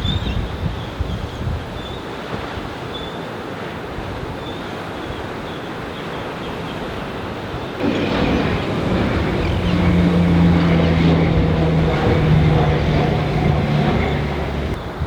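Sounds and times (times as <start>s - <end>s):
wind noise: 0.0s - 15.0s
vehicle engine running: 7.8s - 15.0s.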